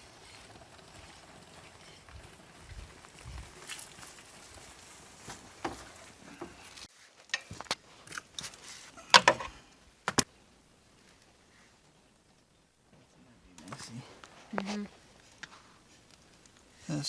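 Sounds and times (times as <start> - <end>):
tools and parts clicking and knocking: 9.1 - 9.5.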